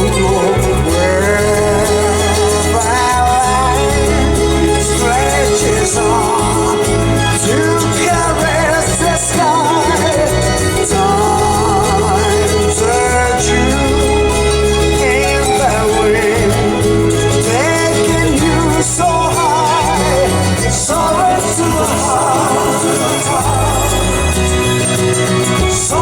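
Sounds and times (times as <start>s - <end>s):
song with bass line and vibrato melody: 0.0s - 26.0s.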